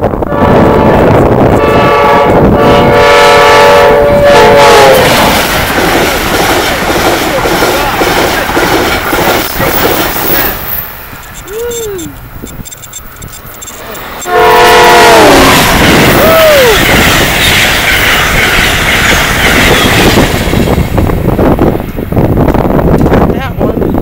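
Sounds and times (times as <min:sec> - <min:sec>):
train rushing by: 0:00.0 - 0:24.0
locomotive air horn blast: 0:00.3 - 0:05.2, 0:14.2 - 0:16.3.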